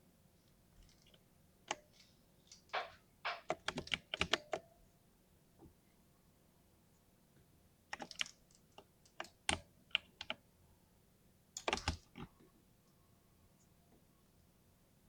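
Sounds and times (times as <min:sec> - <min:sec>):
mechanical keyboard typing: 0:02.7 - 0:04.6, 0:07.9 - 0:10.4, 0:11.6 - 0:12.3.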